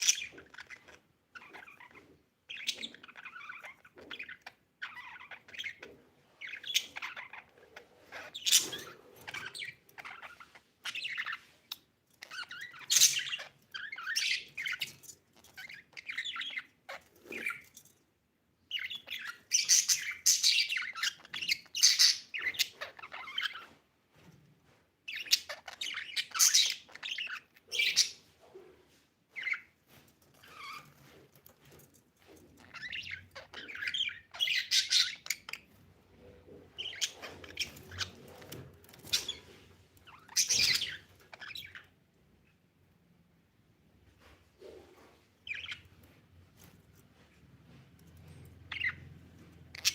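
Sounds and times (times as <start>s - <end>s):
budgerigar chirping: 18.7s - 23.7s, 25.1s - 28.2s, 32.7s - 35.7s, 40.1s - 41.9s, 48.7s - 49.0s.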